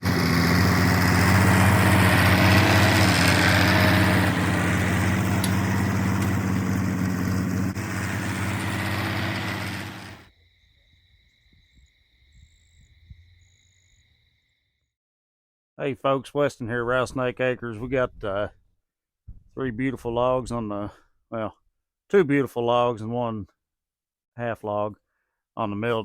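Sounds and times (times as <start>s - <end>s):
tractor engine running: 0.0s - 10.3s.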